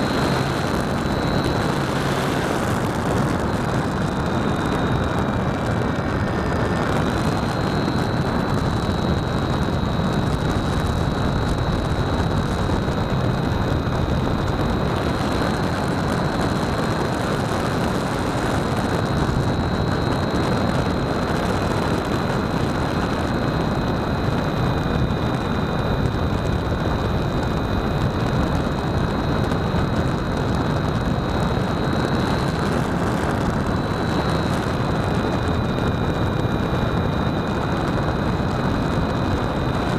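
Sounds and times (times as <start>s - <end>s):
high motor and propeller whine: 0.0s - 39.9s
wind rushing over camera: 0.0s - 39.9s.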